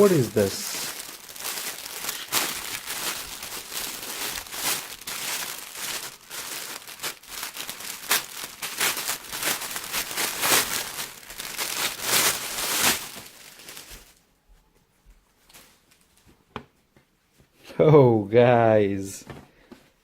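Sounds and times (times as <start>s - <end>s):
packaging crinkling and rustling: 0.0s - 14.2s, 15.4s - 16.4s.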